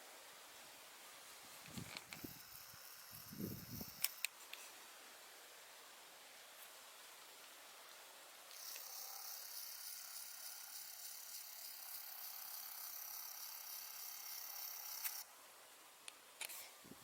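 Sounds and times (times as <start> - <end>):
wind blowing: 3.1 - 4.0.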